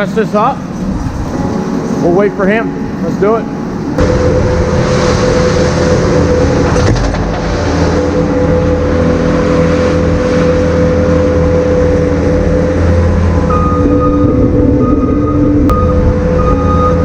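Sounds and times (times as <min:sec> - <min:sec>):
steady whine: 0:00.0 - 0:17.0
skid steer engine rumble: 0:04.0 - 0:17.0.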